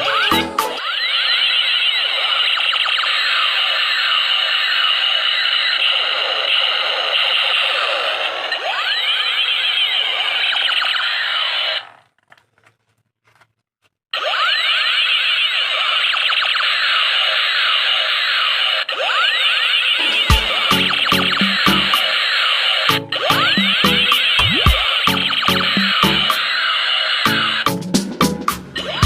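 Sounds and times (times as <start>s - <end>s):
electronic warbling tones: 20.0s - 22.2s, 23.0s - 26.3s.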